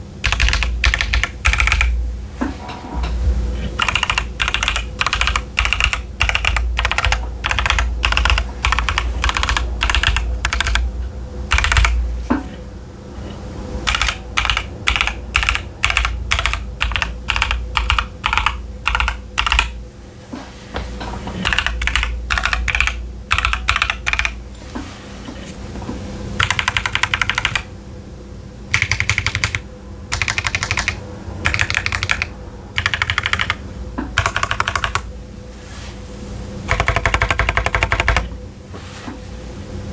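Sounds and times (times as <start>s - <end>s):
mechanical keyboard typing: 0.2s - 2.0s, 3.8s - 10.9s, 11.5s - 12.0s, 13.8s - 19.8s, 21.4s - 24.4s, 26.4s - 27.7s, 28.7s - 33.6s, 34.2s - 35.1s, 36.7s - 38.3s.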